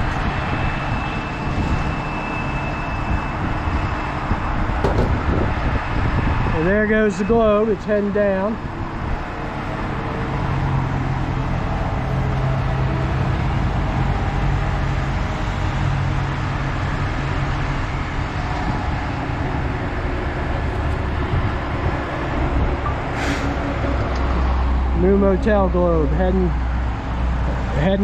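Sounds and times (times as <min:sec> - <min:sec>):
heavy equipment engine humming: 0:00.0 - 0:28.0.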